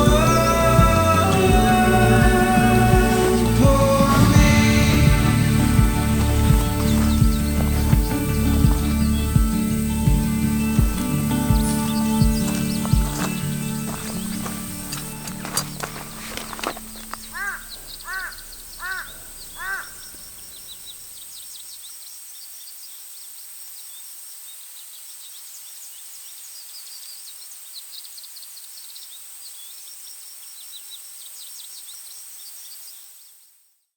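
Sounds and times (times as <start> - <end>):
high chirping of small birds: 0.0 - 22.9
crow cawing: 11.2 - 20.6.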